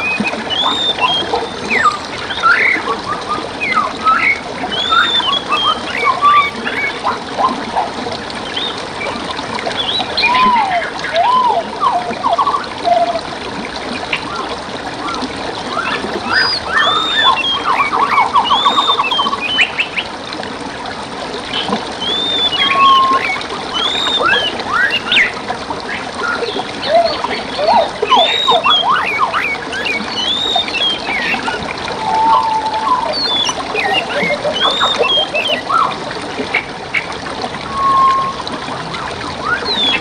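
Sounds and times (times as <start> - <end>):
songbirds calling: 0.0 - 7.1, 14.0 - 20.2, 21.5 - 37.1, 38.9 - 40.0
stream water trickling: 0.0 - 40.0.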